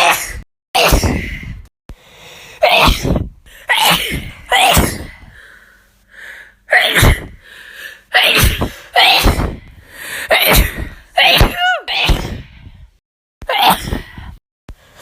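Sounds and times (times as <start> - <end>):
woman sneezing: 0.0 - 1.2, 2.6 - 5.1, 6.7 - 7.3, 8.2 - 9.5, 10.3 - 12.4.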